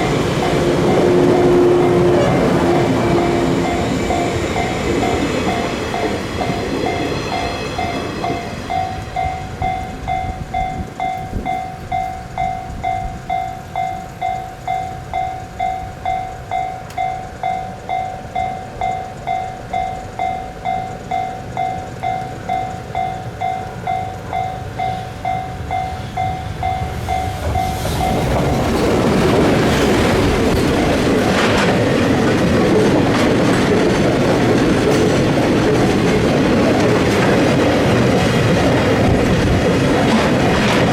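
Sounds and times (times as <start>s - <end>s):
level crossing bell ringing: 0.0s - 28.2s
train passing rumble and clatter: 0.0s - 40.9s.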